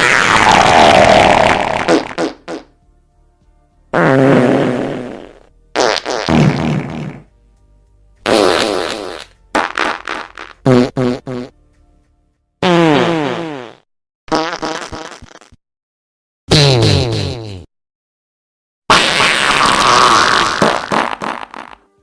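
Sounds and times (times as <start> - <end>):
farts: 0.0 - 2.7, 3.9 - 7.3, 8.2 - 11.6, 12.6 - 15.6, 16.5 - 17.7, 18.9 - 21.9.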